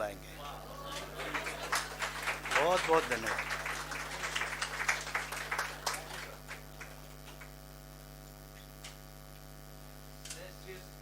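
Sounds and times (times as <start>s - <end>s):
mains hum: 0.0s - 11.0s
scattered applause: 0.4s - 7.6s.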